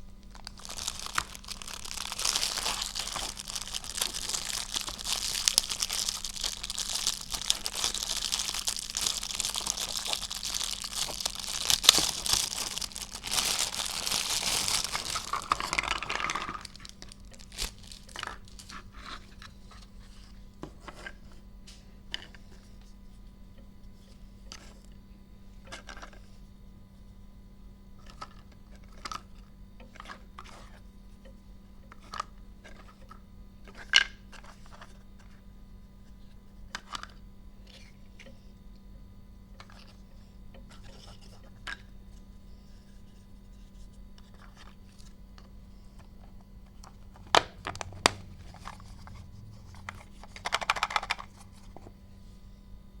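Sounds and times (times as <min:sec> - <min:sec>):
faint steady hum: 0:00.0 - 0:53.0
wrapper crinkling: 0:00.3 - 0:19.2, 0:46.7 - 0:51.8
plastic toy pieces clicking: 0:50.3 - 0:51.3.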